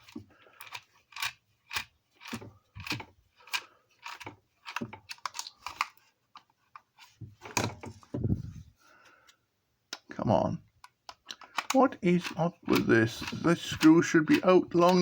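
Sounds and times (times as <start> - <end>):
screwdriver clicking and scraping: 0.0 - 7.1, 10.8 - 15.0.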